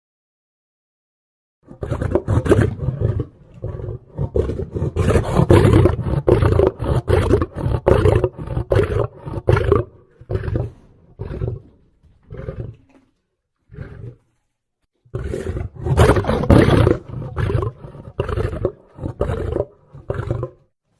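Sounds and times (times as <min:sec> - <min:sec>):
lion roaring: 0:01.7 - 0:13.0, 0:13.7 - 0:14.2, 0:15.1 - 0:20.7
lion roaring grunts: 0:15.1 - 0:20.6.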